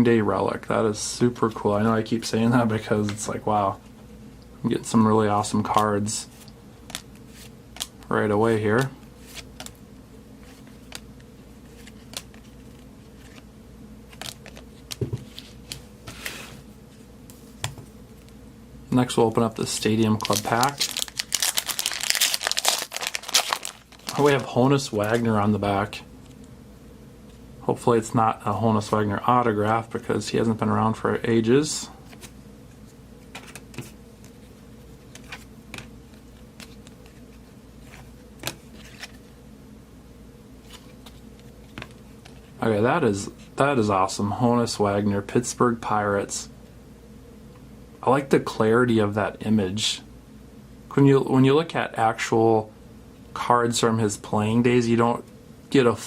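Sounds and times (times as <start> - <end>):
cards clicking and rustling: 6.8 - 8.1, 8.7 - 9.8, 10.4 - 13.5, 14.1 - 16.3, 20.2 - 25.3, 33.3 - 34.4, 35.0 - 39.3.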